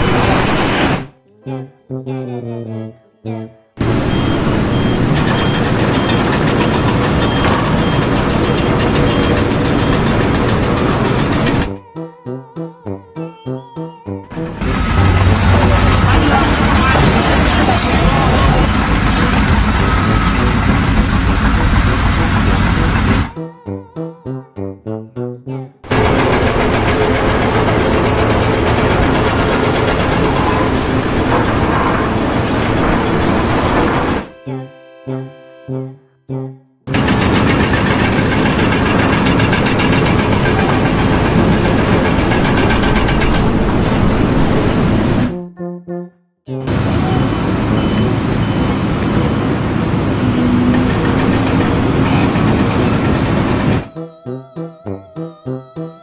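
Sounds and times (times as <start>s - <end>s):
heavy machinery running: 0.0s - 1.1s, 3.8s - 11.8s, 14.3s - 23.4s, 25.9s - 34.3s, 36.9s - 45.3s, 46.7s - 54.0s
low hum: 14.3s - 23.4s, 25.9s - 34.4s.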